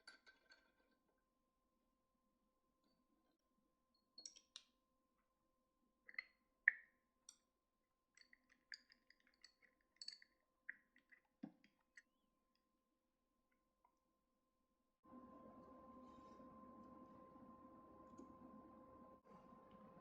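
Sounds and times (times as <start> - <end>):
clicks and taps of small parts: 4.2 - 4.7.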